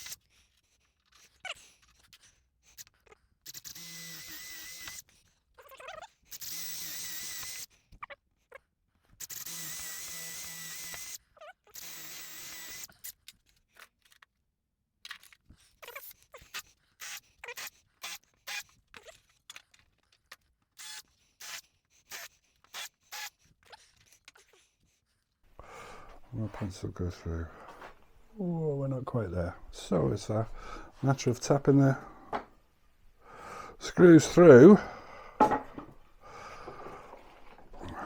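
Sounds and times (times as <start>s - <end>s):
power drill whirring: 3.5s - 5.1s, 6.3s - 7.7s, 9.2s - 11.2s, 11.8s - 12.9s, 16.6s - 18.8s, 20.8s - 23.5s.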